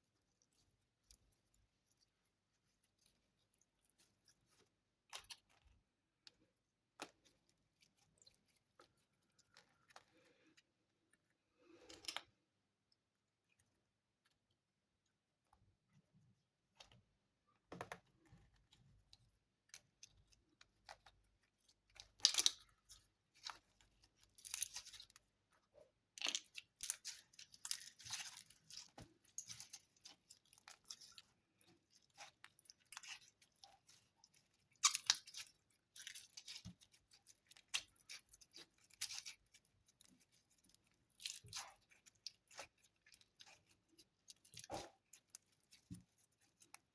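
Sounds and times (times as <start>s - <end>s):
slime crackling and popping: 32.1s - 39.5s.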